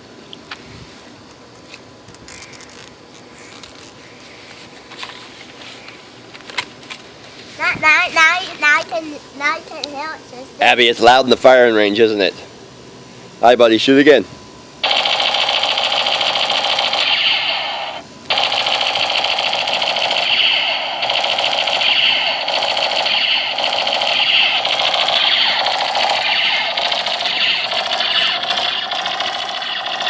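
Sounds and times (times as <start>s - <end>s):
toy gun automatic fire: 14.8s - 30.0s.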